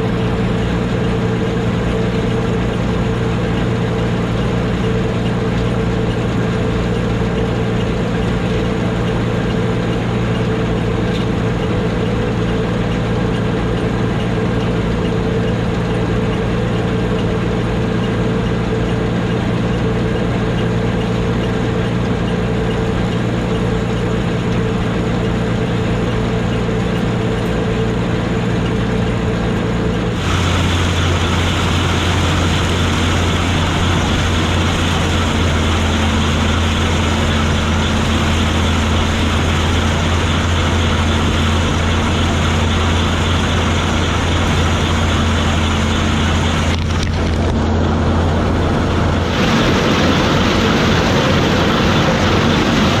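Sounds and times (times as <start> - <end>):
combine harvester engine droning: 0.0 - 53.0.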